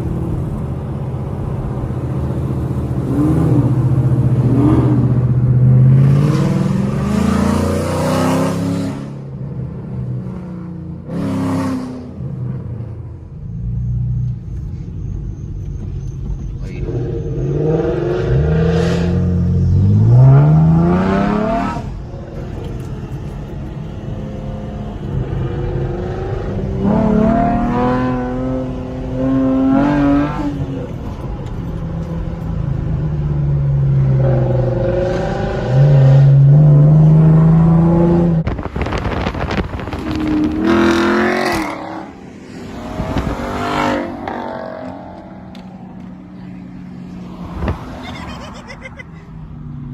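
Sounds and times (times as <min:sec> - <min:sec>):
car engine accelerating hard: 0:14.2 - 0:49.9.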